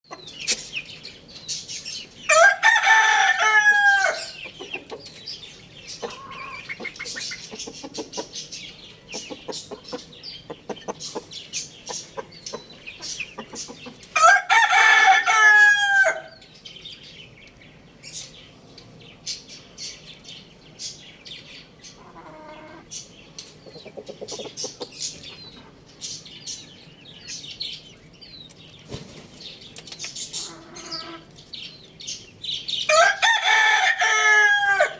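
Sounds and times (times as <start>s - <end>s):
rooster crowing: 2.3s - 4.4s, 14.2s - 16.4s, 32.9s - 34.9s.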